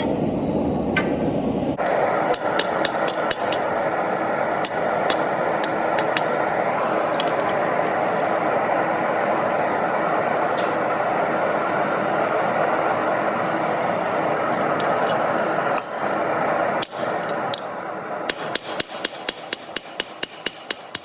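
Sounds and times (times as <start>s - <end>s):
steady rushing noise: 0.2s - 18.5s
hammer striking hot steel: 1.9s - 8.3s, 14.6s - 21.0s.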